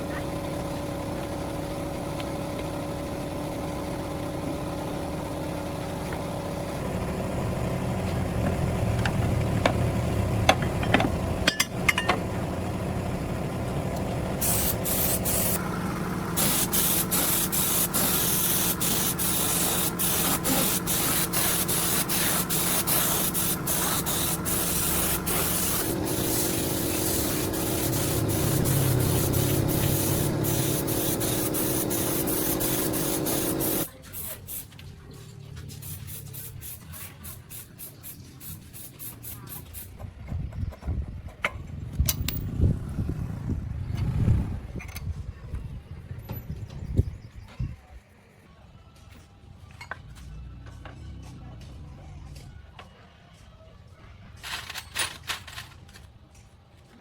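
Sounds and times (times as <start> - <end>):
machine hum: 0.0 - 33.9
spray hissing in short bursts: 14.4 - 34.7, 35.8 - 40.0.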